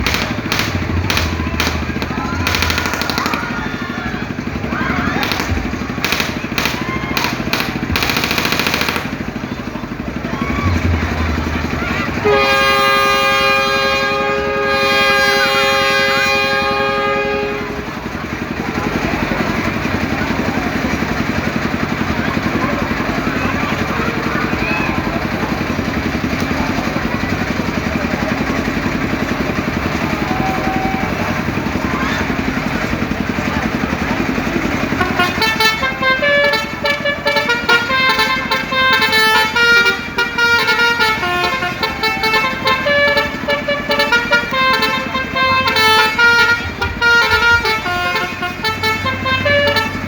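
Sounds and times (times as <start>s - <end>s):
mechanical engine noise: 0.0s - 50.0s
ride horn sounding: 0.0s - 50.0s.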